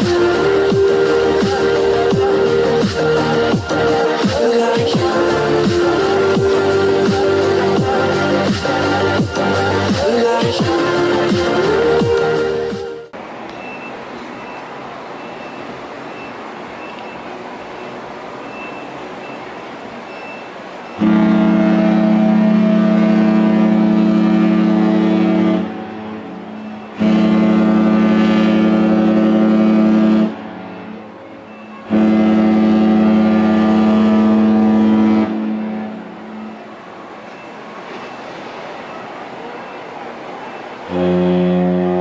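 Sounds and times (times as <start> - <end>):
horn echo: 0.0 - 13.1, 21.0 - 36.6, 40.9 - 42.0
ship horn blasts: 0.0 - 13.2, 20.9 - 37.5, 40.8 - 42.0.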